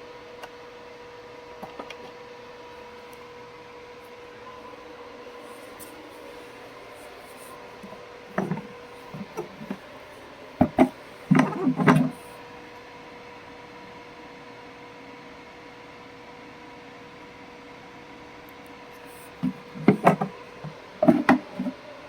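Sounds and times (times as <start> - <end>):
faint steady hum: 0.0 - 22.0
knocks and rubbing sounds: 7.3 - 9.8, 10.6 - 12.3, 19.2 - 21.7.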